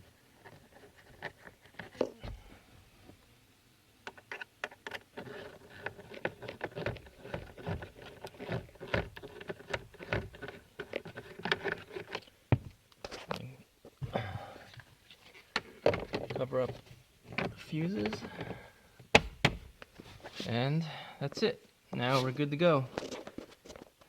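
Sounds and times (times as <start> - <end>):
plastic trim clicks and knocks: 19.2 - 19.9.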